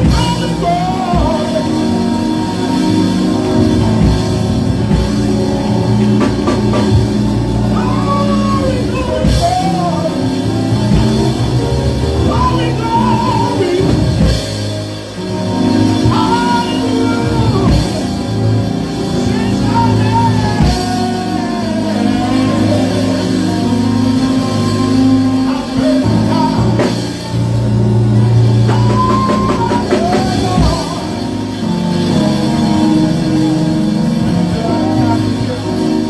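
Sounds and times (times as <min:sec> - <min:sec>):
worship band with drums and guitar: 0:00.0 - 0:36.0
person singing long held notes: 0:15.7 - 0:31.6.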